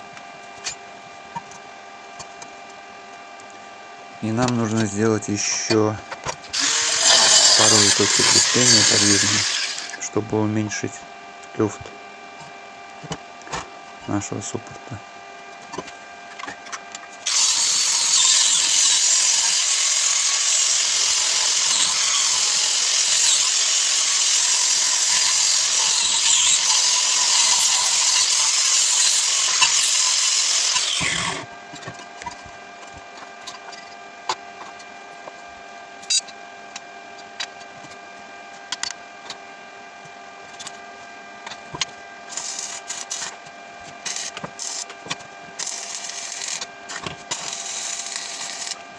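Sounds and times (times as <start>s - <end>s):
power tool running: 6.4s - 10.2s, 17.2s - 32.9s, 41.5s - 48.9s.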